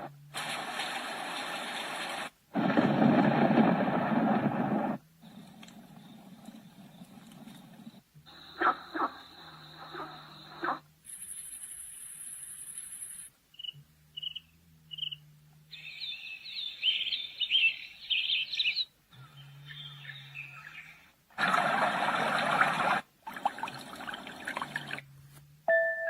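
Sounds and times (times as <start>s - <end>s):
loud hiss of noise: 0.0s - 5.4s
birdsong: 13.6s - 21.1s.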